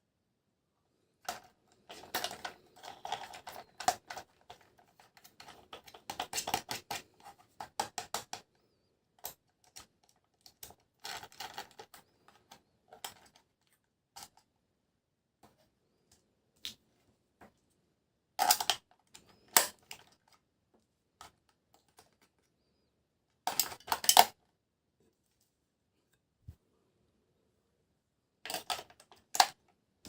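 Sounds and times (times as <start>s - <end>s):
plastic and cardboard crinkling: 1.3s - 8.4s.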